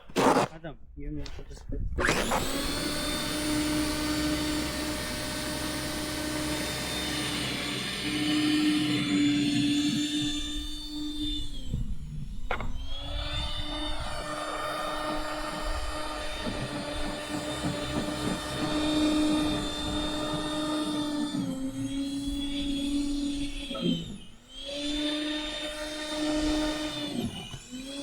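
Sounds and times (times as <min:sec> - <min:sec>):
snowblower engine running: 0:02.0 - 0:23.8.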